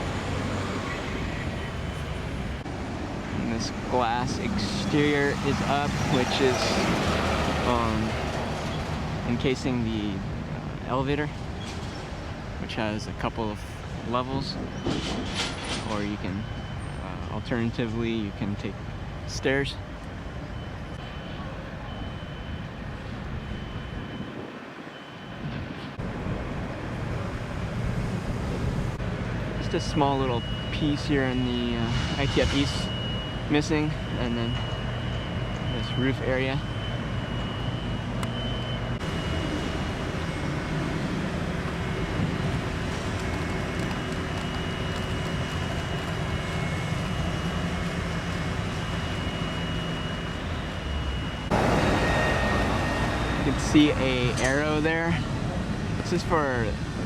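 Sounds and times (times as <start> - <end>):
road traffic rumble: 0.0 - 57.0
faint high beep: 20.4 - 25.7, 29.6 - 40.8, 48.6 - 55.3.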